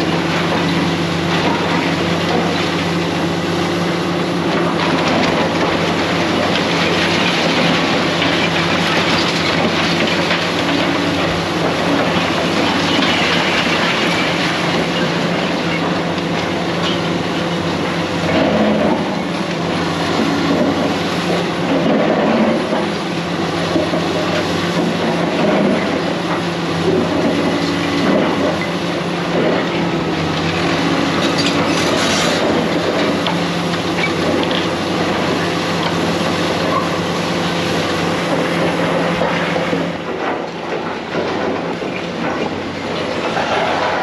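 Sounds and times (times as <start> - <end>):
diesel engine running: 0.0 - 44.0
metal clanking and scraping: 31.3 - 32.7.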